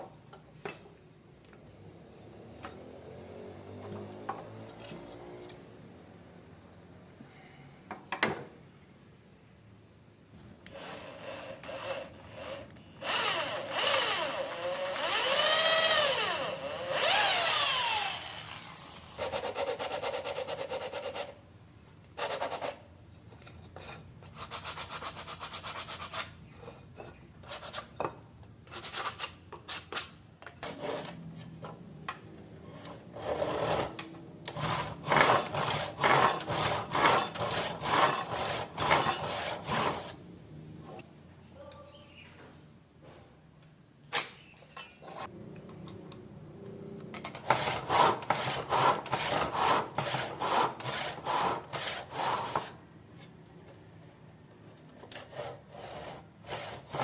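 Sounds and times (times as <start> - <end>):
hand tool scraping wood: 22.2 - 31.6, 32.6 - 40.2, 47.2 - 53.4, 55.1 - 57.0.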